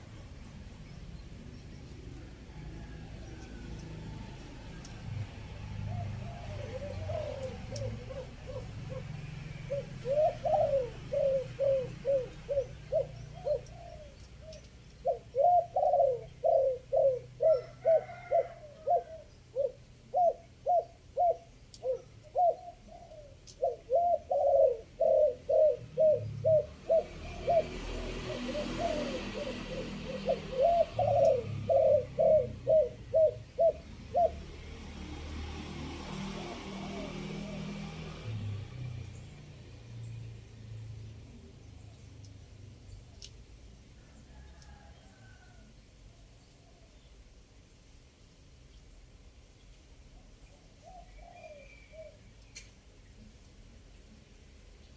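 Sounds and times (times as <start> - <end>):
dove cooing: 2.2 - 39.5, 50.2 - 52.3.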